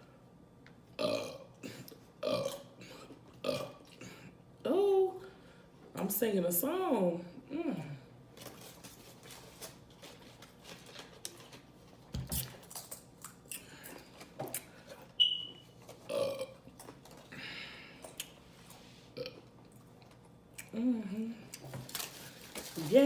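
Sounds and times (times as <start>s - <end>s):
woman burping: 1.0s - 4.1s, 16.1s - 16.6s.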